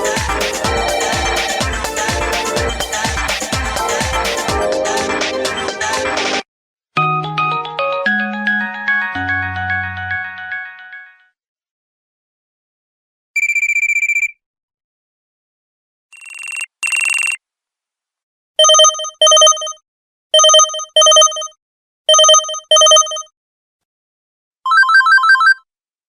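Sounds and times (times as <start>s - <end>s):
telephone double ring: 22.1s - 23.3s.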